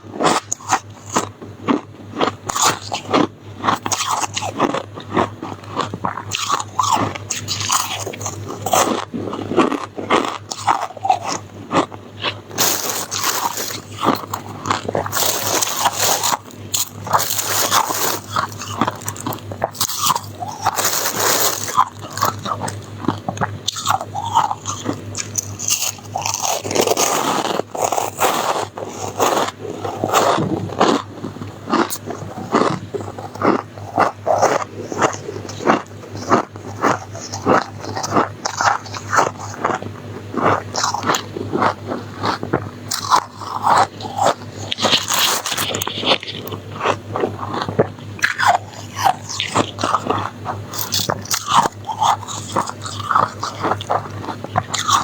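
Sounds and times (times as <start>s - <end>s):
biting and chewing ice: 0.0s - 55.0s.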